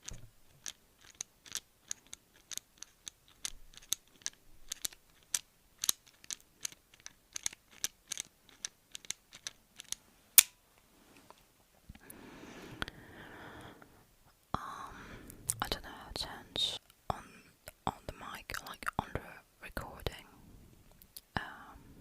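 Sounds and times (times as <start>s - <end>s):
soft hissing rustle: 9.4s - 22.0s.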